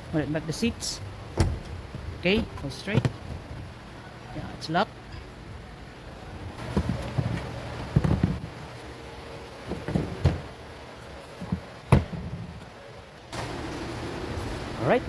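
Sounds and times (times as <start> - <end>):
car seat thumps and knocks: 1.4 - 3.6, 6.6 - 8.6, 9.7 - 10.6, 11.4 - 12.6.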